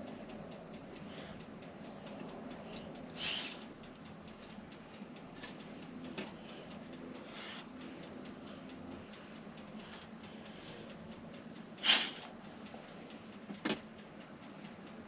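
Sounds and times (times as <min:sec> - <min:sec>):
crickets chirping: 0:00.0 - 0:15.0
short hissing bursts: 0:03.1 - 0:03.7, 0:06.5 - 0:08.0, 0:11.8 - 0:12.3.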